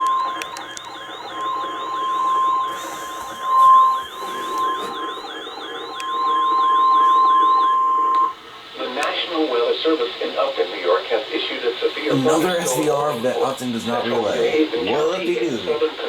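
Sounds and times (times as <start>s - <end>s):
warbling electronic siren: 0.0s - 8.5s.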